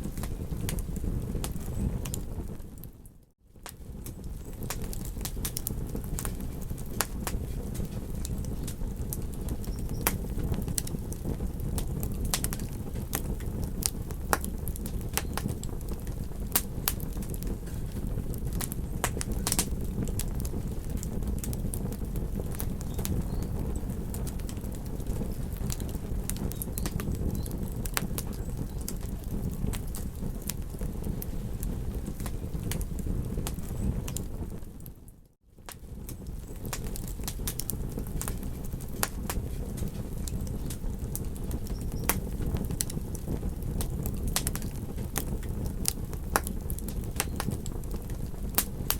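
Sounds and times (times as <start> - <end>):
campfire crackling: 0.0 - 48.9
fire pops and snaps: 0.0 - 48.9.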